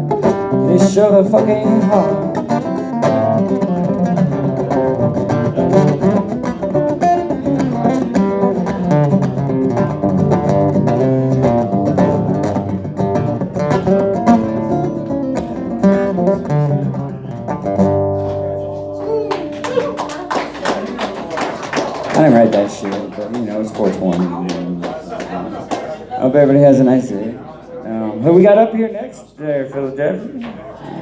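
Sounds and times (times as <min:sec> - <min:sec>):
acoustic guitar picked fast: 0:00.0 - 0:27.1.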